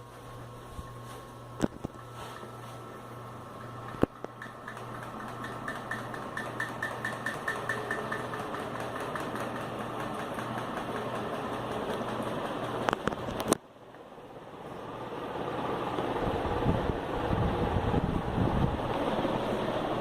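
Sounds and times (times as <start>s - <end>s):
ceiling fan running: 0.0s - 20.0s
light regular ticking: 3.5s - 13.5s.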